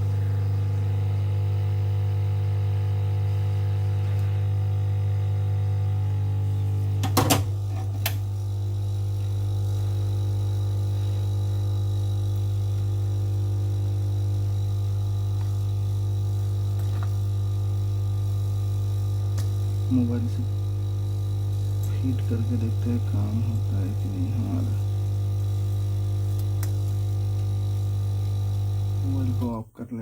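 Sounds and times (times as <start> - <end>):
low electrical hum: 0.0 - 30.0.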